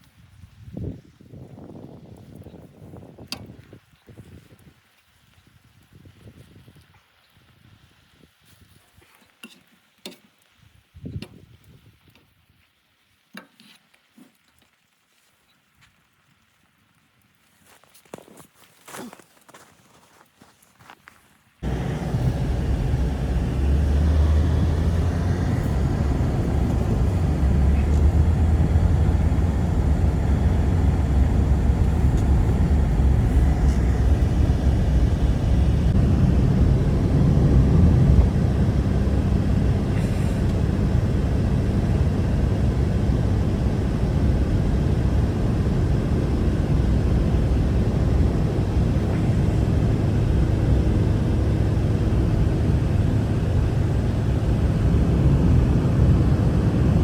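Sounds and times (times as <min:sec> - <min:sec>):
strong wind rumble: 0:21.6 - 0:57.0.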